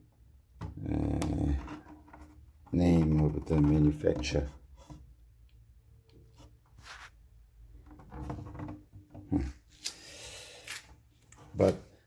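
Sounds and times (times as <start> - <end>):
soft rubs and scrapes: 1.4 - 5.2, 6.2 - 10.0.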